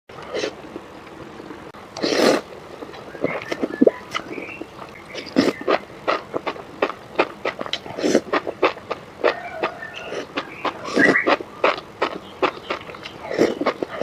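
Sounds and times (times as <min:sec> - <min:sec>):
noodle slurp: 0:02.0 - 0:02.5, 0:05.1 - 0:09.4, 0:10.0 - 0:14.0
wet chewing and mouth smacks: 0:02.0 - 0:14.0.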